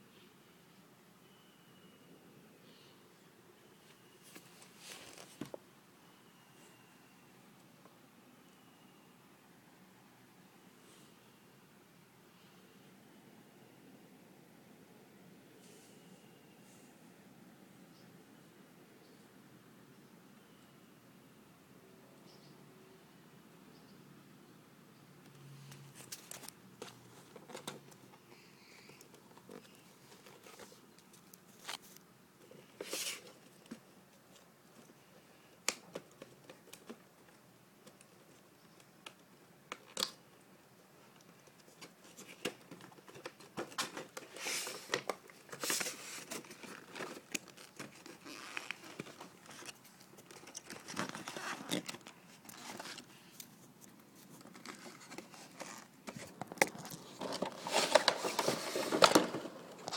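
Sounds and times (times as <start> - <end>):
plastic and cardboard crinkling: 4.2 - 5.6, 25.8 - 40.2, 41.0 - 59.9.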